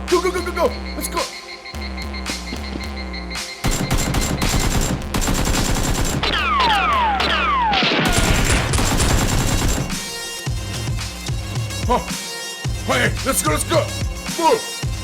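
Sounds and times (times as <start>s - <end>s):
falling whines: 0.3s - 5.0s, 6.2s - 8.8s
automatic gunfire: 3.6s - 10.1s.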